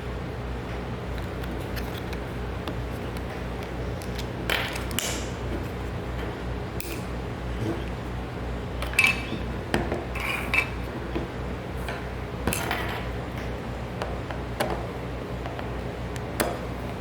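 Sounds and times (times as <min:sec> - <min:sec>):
steady low hum: 0:00.0 - 0:17.0
metal tools clinking: 0:08.8 - 0:09.5.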